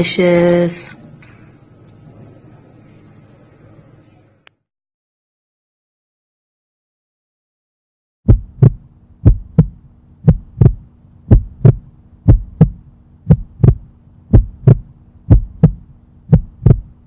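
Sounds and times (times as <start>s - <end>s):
deep heartbeat thumps: 8.3s - 17.0s
faint steady hum: 8.3s - 17.0s.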